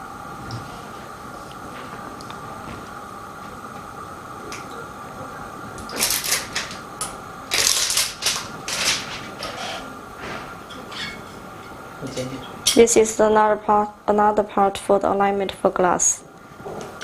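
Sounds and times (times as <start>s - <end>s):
faint steady hum: 0.0s - 17.0s
plastic parts clicking and rustling: 5.9s - 6.8s, 7.5s - 9.2s.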